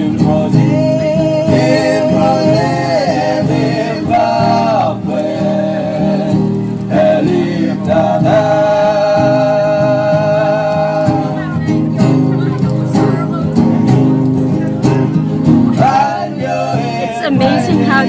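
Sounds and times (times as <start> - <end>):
group singing in harmony: 0.0 - 11.8, 15.4 - 18.0
strummed acoustic strings: 0.0 - 18.0.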